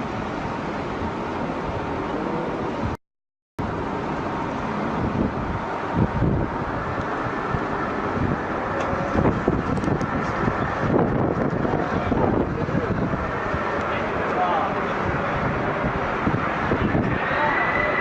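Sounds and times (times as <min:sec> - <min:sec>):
wind buffeting microphone: 0:03.6 - 0:18.0
steady broad roar: 0:04.2 - 0:18.0.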